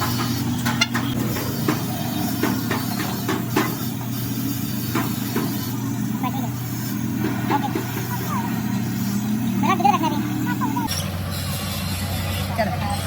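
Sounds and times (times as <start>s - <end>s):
sharp knocks and clicks: 0.0s - 3.9s
engine running with low hum: 0.0s - 13.0s.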